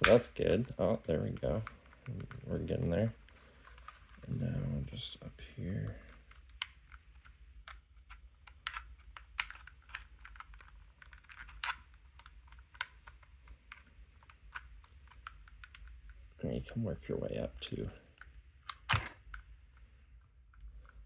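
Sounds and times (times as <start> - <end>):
plastic snaps: 0.0 - 2.6, 6.1 - 16.2, 18.2 - 19.9.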